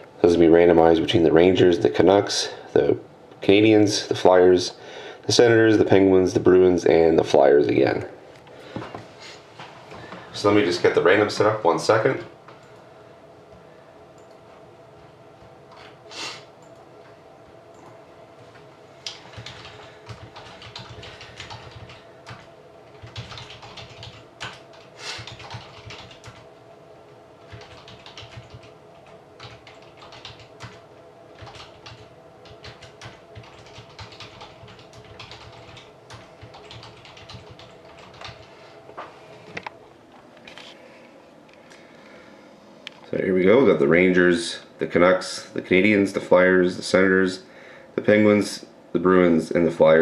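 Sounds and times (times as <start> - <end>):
typing on a keyboard: 19.1 - 26.5, 27.5 - 30.8, 31.4 - 38.5.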